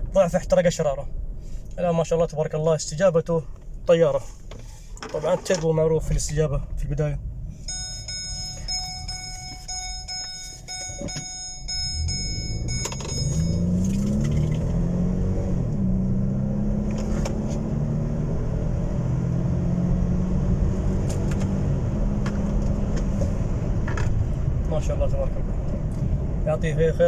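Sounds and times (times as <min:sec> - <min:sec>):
repeating electronic chime: 0:07.7 - 0:14.2
car engine accelerating hard: 0:11.0 - 0:26.7.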